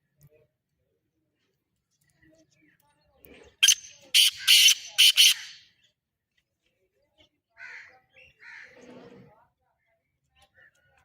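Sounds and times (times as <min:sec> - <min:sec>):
francolin harsh grating call: 0:03.6 - 0:05.6.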